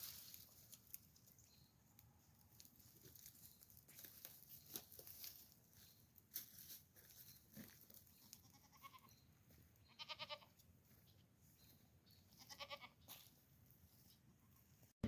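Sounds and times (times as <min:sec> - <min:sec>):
goat bleating: 0:08.4 - 0:09.1, 0:09.9 - 0:10.6, 0:12.3 - 0:13.0.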